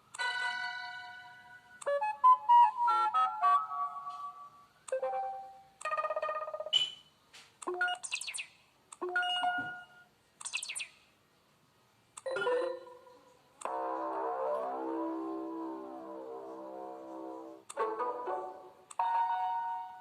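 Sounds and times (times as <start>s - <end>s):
phone message alert tones: 12.2s - 13.1s.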